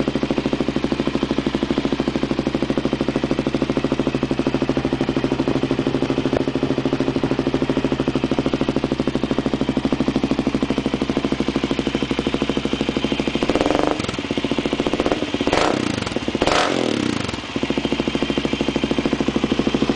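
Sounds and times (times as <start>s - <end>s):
quad engine idling: 0.0s - 19.9s
engine revving: 13.2s - 19.9s.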